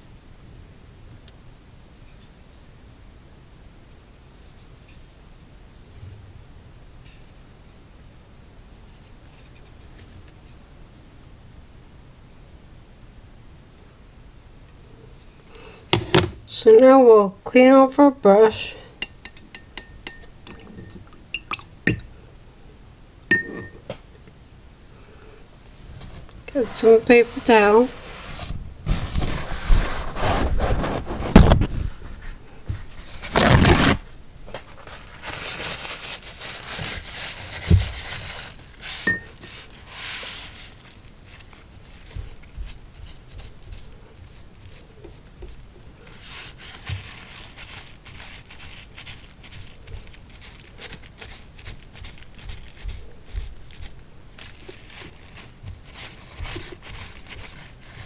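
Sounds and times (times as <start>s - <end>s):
paintbrush scraping and rubbing: 25.5s - 58.0s
paper towel crinkling: 25.5s - 58.0s.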